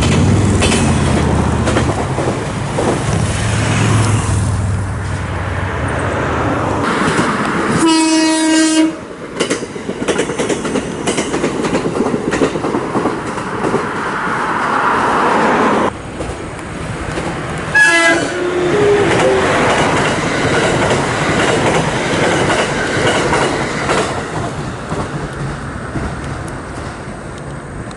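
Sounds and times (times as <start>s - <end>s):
train music horn rising notes: 7.7s - 9.1s, 17.7s - 19.9s
train horn blast: 7.8s - 9.1s, 17.7s - 19.7s.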